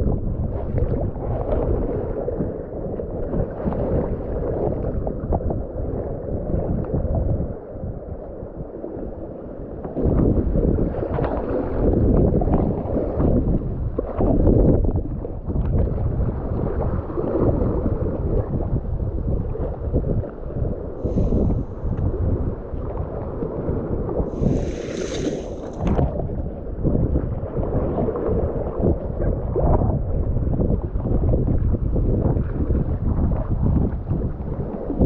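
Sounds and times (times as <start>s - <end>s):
wind buffeting microphone: 0.0s - 35.0s
short hiss: 24.4s - 25.8s.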